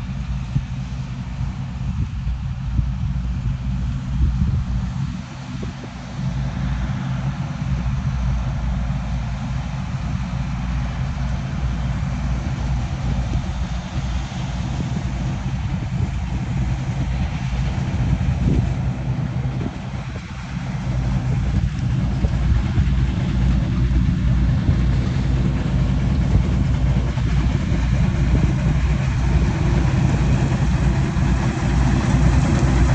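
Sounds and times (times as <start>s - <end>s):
combine harvester engine drone: 0.0s - 32.9s
machinery noise: 15.1s - 32.9s.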